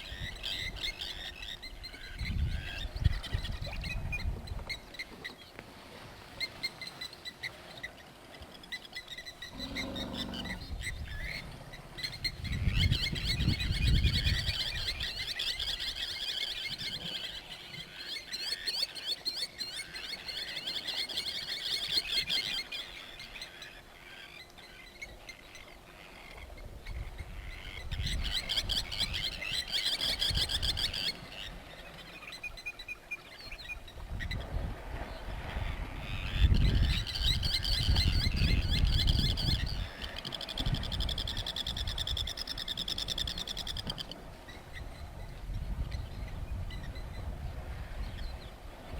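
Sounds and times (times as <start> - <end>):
wild birds chirping: 6.4 - 34.0.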